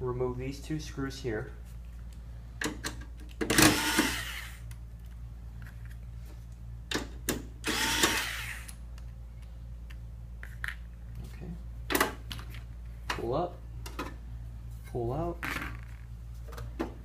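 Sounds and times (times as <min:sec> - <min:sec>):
electric screwdriver whirring: 0:03.6 - 0:04.7, 0:07.6 - 0:08.8.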